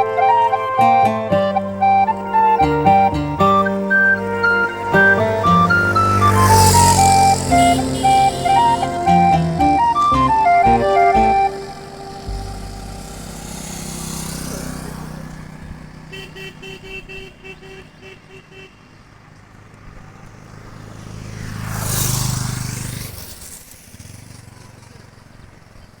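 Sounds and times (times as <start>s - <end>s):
engine running close by: 0.0s - 17.8s, 19.0s - 26.0s
vehicle passing: 0.0s - 18.0s, 19.0s - 25.7s
horn short beeps: 0.8s - 12.9s.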